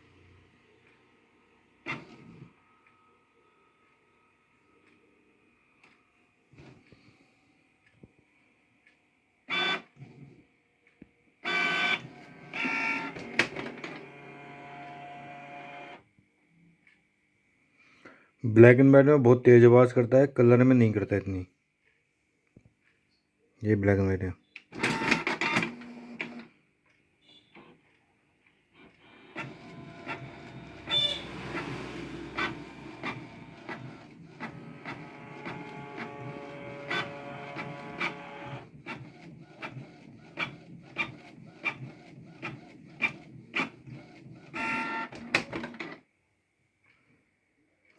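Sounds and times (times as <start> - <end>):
inkjet printer motors whining: 11.4 - 16.0, 24.8 - 26.5, 28.8 - 46.0
printer click: 11.5 - 16.0, 28.9 - 46.0.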